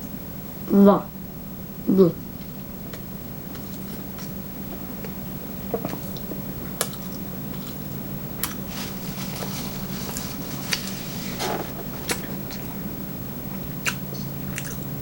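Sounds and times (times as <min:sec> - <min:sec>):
person chewing: 0:05.0 - 0:15.0.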